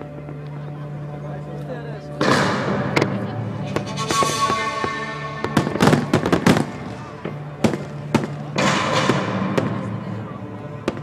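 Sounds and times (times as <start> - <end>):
fireworks bangs: 2.2 - 10.2
fireworks hissing crackle: 3.6 - 10.0.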